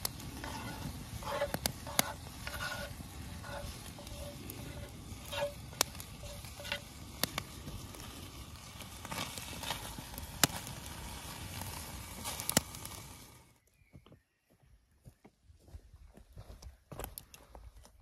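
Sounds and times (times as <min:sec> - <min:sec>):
wood popping: 0:00.0 - 0:08.2
campfire crackling: 0:00.0 - 0:13.6
hiss of burning: 0:00.0 - 0:13.6.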